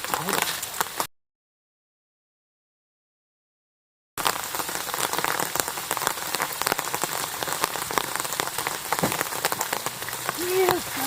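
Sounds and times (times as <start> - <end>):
rain falling: 0.0 - 1.1, 4.2 - 11.0.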